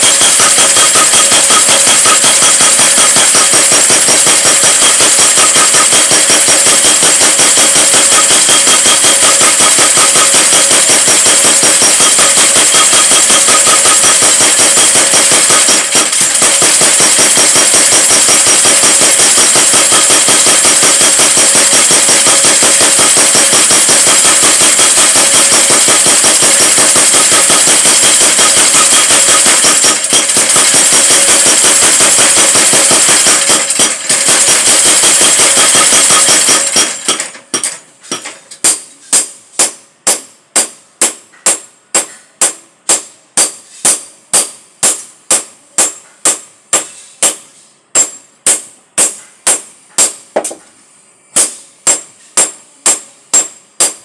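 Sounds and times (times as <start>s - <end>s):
power hammer pounding metal: 0.0s - 47.4s, 48.0s - 50.6s, 51.4s - 54.0s.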